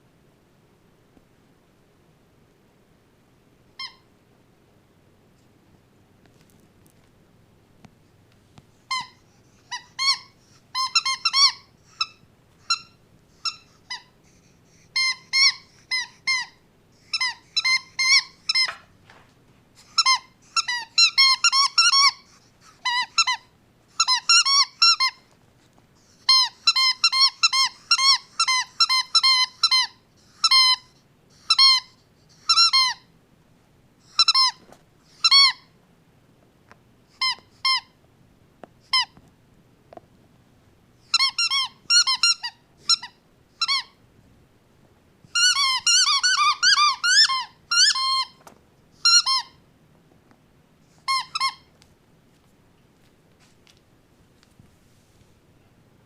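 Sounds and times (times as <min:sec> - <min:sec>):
high-pitched squeaks: 0:08.8 - 0:18.9, 0:45.3 - 0:49.6, 0:51.0 - 0:51.7.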